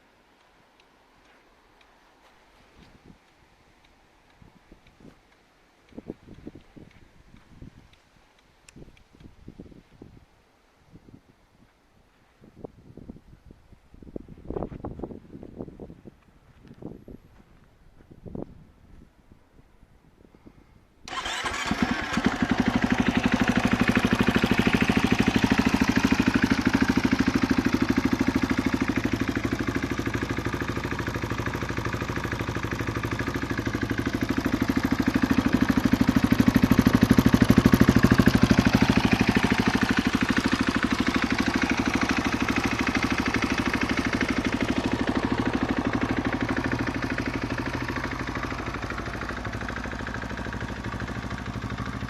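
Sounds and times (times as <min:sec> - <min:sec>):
motorcycle engine idling: 0:21.1 - 0:52.0.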